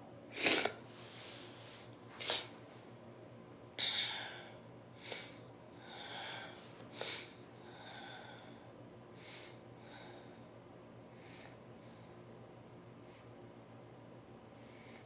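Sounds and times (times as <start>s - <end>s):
person sniffling and snorting: 0.3s - 2.5s.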